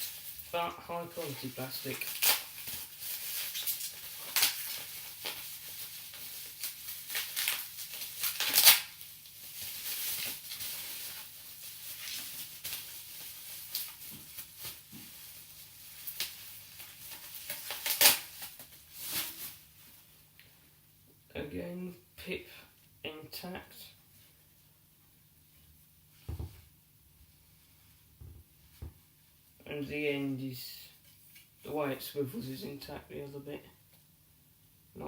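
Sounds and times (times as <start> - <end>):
packaging rustling: 0.0 - 19.7.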